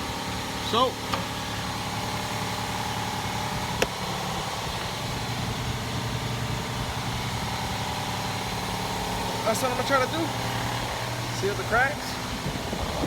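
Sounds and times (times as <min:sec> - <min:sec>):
car engine idling: 0:00.0 - 0:13.0.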